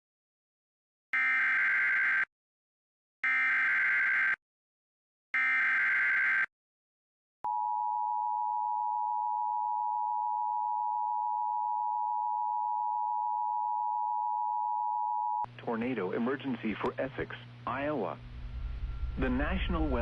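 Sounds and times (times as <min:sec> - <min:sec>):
buzzy warbling data tone: 0:17.8 - 0:20.0.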